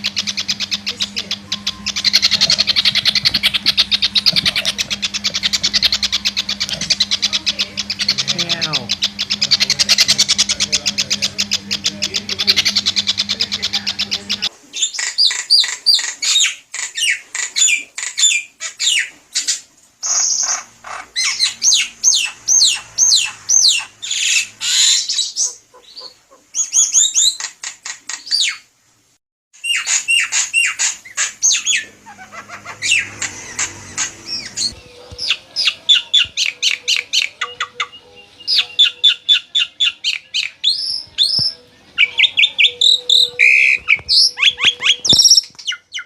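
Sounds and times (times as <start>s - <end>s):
fast pulsed bird trill: 0.0s - 19.0s, 20.0s - 27.4s, 29.6s - 41.3s
bird whistling falling notes: 31.4s - 37.4s.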